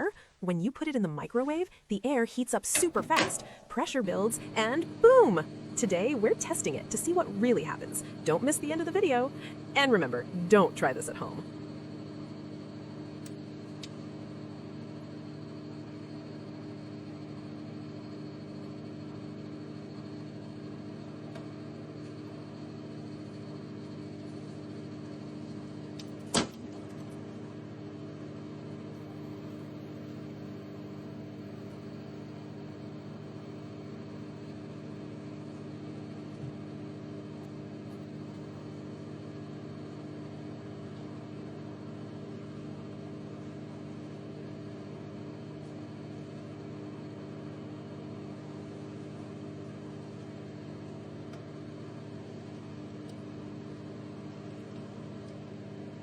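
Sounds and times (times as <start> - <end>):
microwave oven humming: 0.0 - 56.0.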